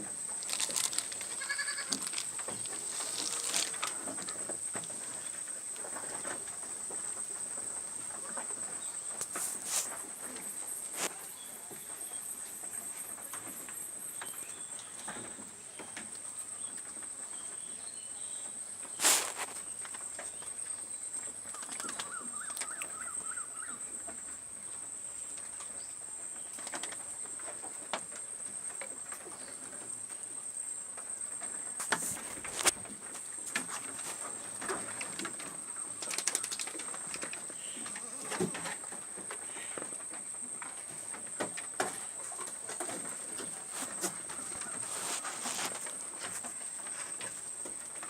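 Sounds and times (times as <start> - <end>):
small clicks and knocks: 33.5 - 39.4.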